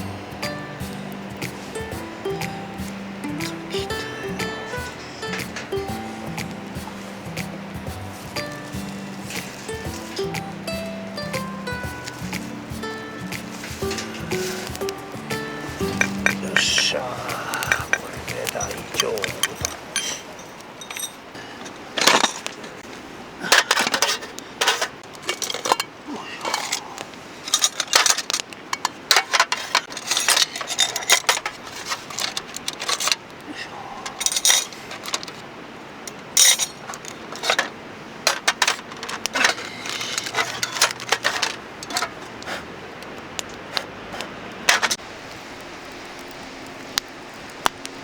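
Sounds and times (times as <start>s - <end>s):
metal pieces clinking: 3.3s - 5.9s, 17.5s - 21.3s, 23.5s - 26.8s, 27.5s - 33.2s, 34.2s - 35.4s, 36.4s - 42.2s.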